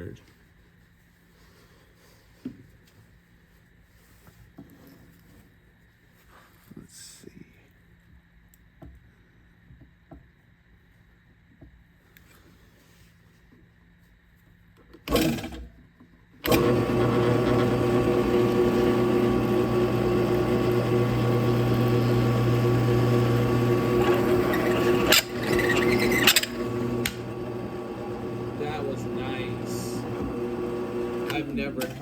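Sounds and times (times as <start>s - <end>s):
drill press cutting metal: 16.4s - 32.0s.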